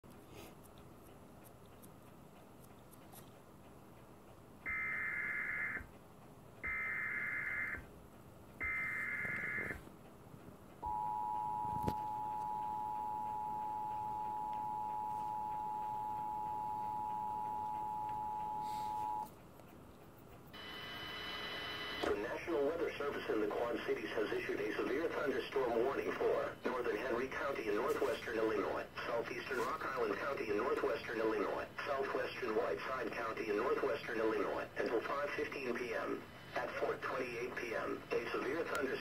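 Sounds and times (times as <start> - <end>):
two-tone attention signal: 10.8 - 19.3.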